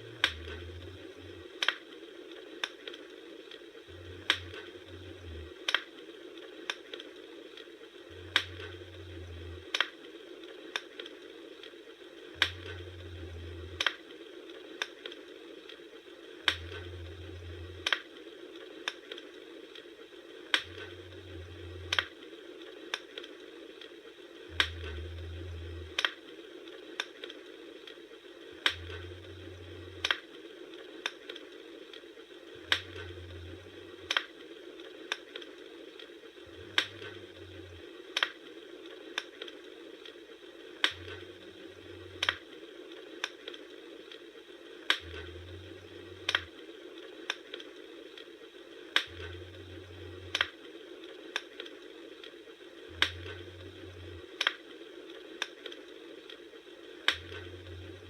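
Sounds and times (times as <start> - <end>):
low hum: 0.0 - 1.6, 3.8 - 5.7, 7.9 - 9.8, 12.2 - 14.2, 16.1 - 18.5, 20.2 - 22.8, 24.2 - 26.9, 28.3 - 30.9, 32.3 - 34.2, 36.3 - 38.1, 40.6 - 42.4, 44.9 - 46.7, 49.0 - 50.5, 52.8 - 54.4, 56.8 - 58.0
wood fire crackling: 0.0 - 58.0.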